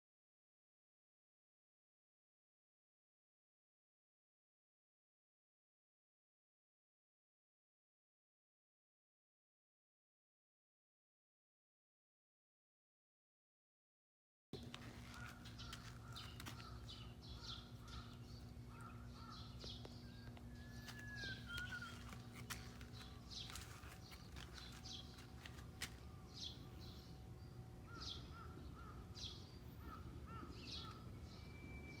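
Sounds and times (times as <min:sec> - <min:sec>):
steady low hum: 0:14.6 - 0:32.0
faint bird chirps: 0:15.1 - 0:25.3.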